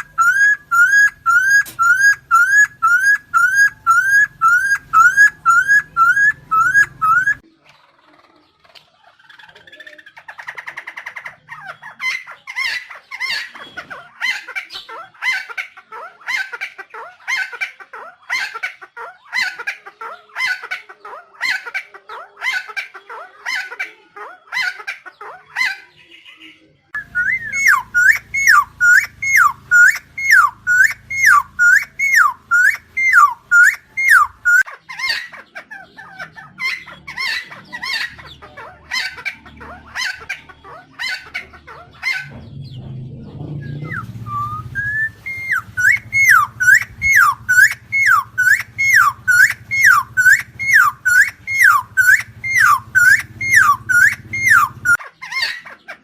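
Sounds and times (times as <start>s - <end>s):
bird calling: 0.0s - 7.5s, 24.6s - 42.9s, 43.6s - 56.0s
low hum: 42.3s - 55.0s.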